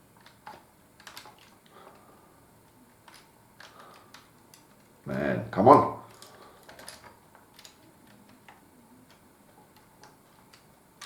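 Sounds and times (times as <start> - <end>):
plastic bricks clicking together: 0.2 - 1.7, 3.0 - 4.8.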